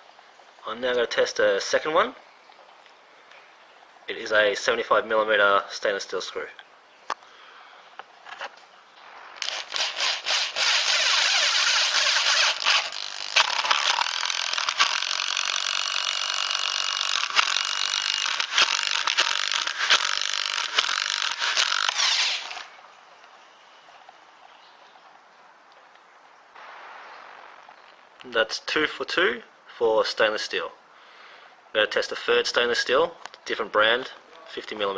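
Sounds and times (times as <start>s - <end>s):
screw snapping: 9.4s - 22.6s
drill clicks: 9.4s - 22.7s
power drill driving a screw: 9.4s - 22.7s.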